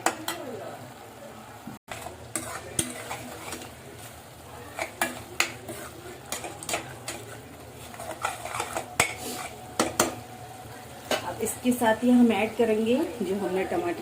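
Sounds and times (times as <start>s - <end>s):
food frying with low sizzle: 0.0s - 14.0s
spoon scraping and clinking in pan: 1.9s - 3.8s, 4.7s - 10.2s.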